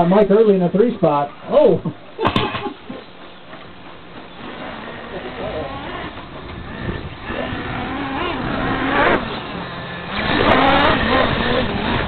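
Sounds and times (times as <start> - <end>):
radio-controlled car motors: 4.4 - 9.5.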